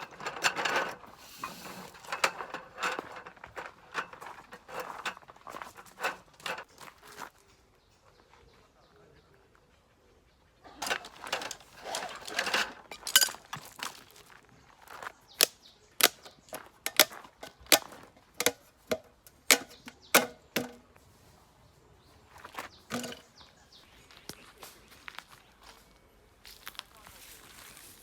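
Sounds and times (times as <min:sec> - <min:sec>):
rustling and handling noise: 0:00.0 - 0:07.6, 0:10.7 - 0:21.4, 0:22.2 - 0:24.2.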